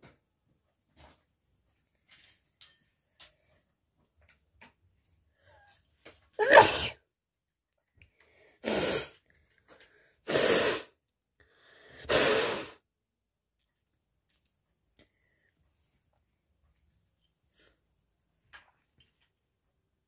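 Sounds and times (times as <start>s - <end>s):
person sneezing: 6.4s - 7.0s, 8.6s - 9.2s, 10.3s - 11.0s, 12.0s - 12.8s.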